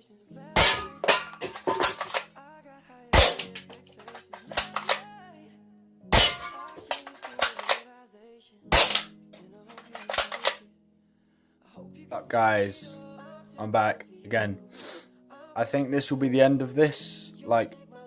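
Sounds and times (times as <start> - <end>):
music: 0.0 - 18.0
airsoft gun shots: 0.6 - 2.2, 3.2 - 5.0, 6.2 - 7.8, 8.7 - 9.1, 9.9 - 10.6.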